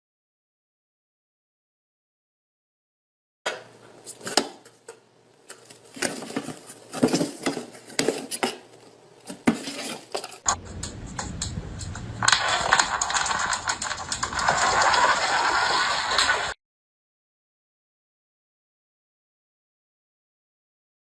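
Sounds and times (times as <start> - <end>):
background hum: 3.6 - 16.5
hard objects clattering: 4.1 - 16.5.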